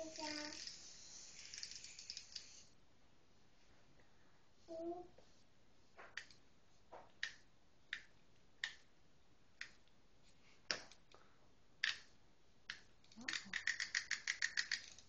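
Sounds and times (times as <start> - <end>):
wind-up toy clicking: 0.0 - 2.7, 12.7 - 15.0.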